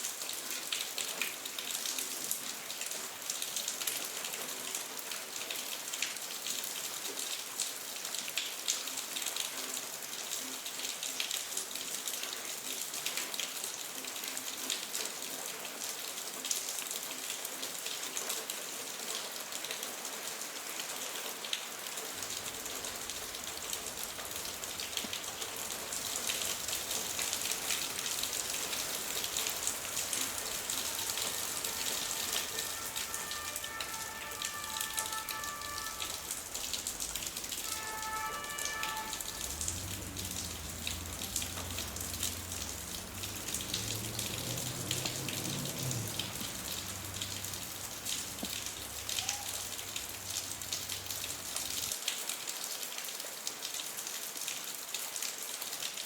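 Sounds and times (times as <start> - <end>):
rain on hard surfaces: 0.0 - 56.0
low rumble: 39.4 - 44.4.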